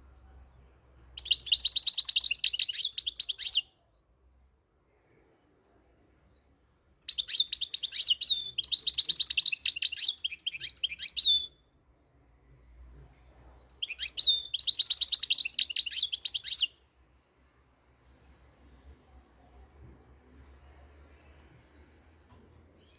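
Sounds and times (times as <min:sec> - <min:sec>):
goldfinch twittering song: 0:01.2 - 0:04.5, 0:05.9 - 0:11.6, 0:13.7 - 0:16.8.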